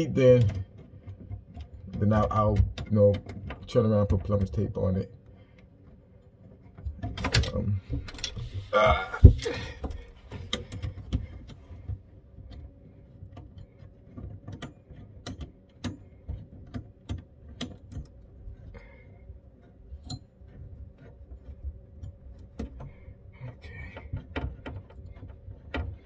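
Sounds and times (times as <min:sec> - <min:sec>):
faint steady hum: 0:00.0 - 0:26.0
hands handling water supply lines: 0:05.6 - 0:18.8.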